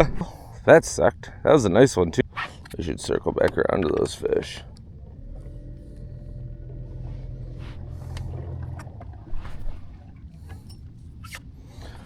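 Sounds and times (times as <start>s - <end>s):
boat motor running: 2.8s - 11.9s.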